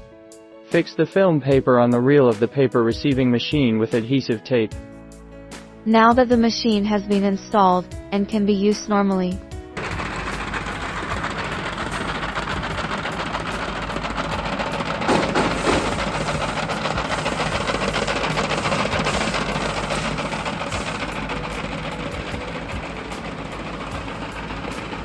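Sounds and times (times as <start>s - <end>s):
machine rattling: 9.8s - 25.0s
loud knocks: 13.4s - 17.9s.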